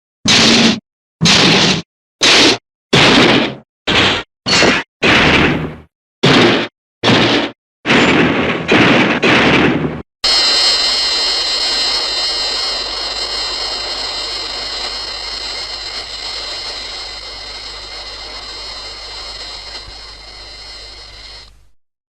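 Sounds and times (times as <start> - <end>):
high jet-like wavering whine: 10.2 - 21.5
hiss: 10.2 - 21.5.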